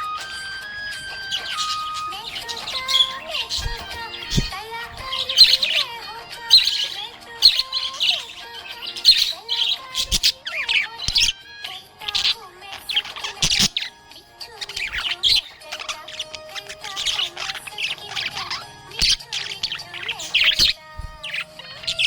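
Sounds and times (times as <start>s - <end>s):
budgerigars chirping: 0.0s - 22.0s
faint background music: 0.0s - 22.0s.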